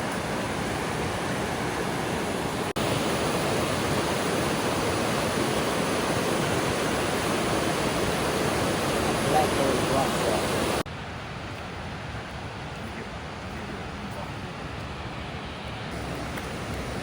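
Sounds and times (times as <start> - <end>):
waterfall rushing: 0.0 - 10.9, 15.9 - 17.0.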